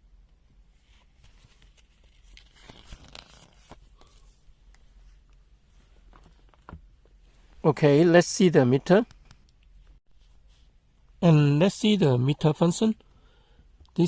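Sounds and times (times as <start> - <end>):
brief rustling: 0.8 - 6.8.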